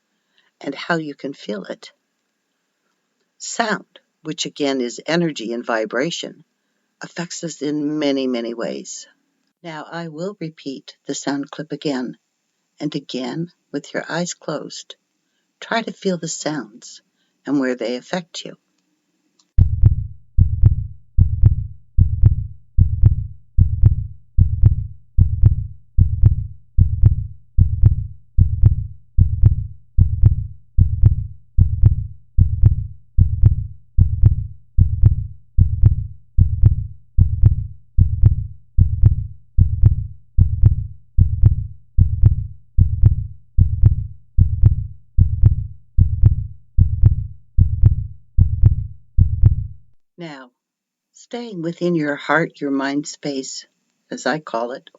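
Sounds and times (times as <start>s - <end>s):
heartbeat thumps: 19.6s - 49.9s.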